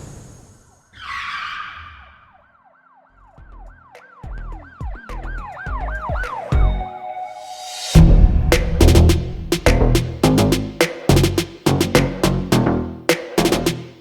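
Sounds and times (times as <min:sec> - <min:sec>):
yelping siren-like tone: 0:01.0 - 0:03.7
low thumps: 0:08.0 - 0:12.7.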